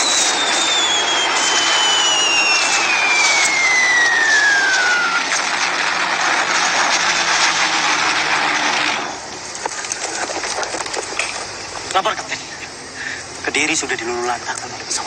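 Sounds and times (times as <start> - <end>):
falling bomb whistle: 0.0 - 5.8
rush of aircraft noise: 0.0 - 13.5.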